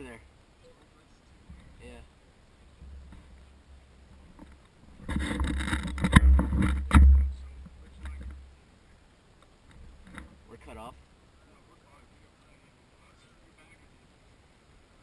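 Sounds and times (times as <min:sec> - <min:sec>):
microphone handling rustle: 0:00.7 - 0:08.6
sharp knocks: 0:04.3 - 0:08.4.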